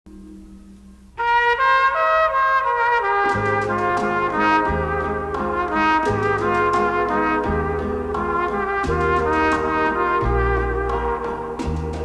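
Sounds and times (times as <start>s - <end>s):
instrumental background music: 2.8s - 12.0s.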